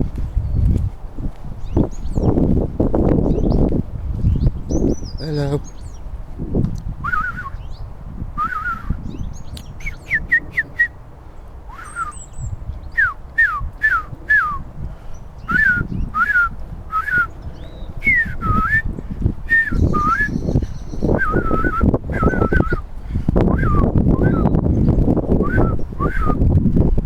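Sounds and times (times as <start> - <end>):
wind rumble on microphone: 0.0 - 27.0
whistled falling notes: 7.1 - 7.6, 19.5 - 20.5, 21.1 - 22.8
high thin bird calls: 7.2 - 10.9, 11.7 - 13.6, 19.6 - 21.2.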